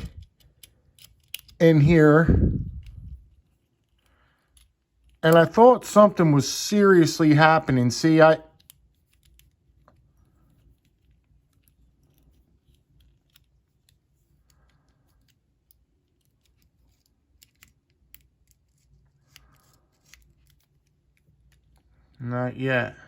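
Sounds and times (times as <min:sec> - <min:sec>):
lock pick clicking in lock: 0:00.1 - 0:01.6.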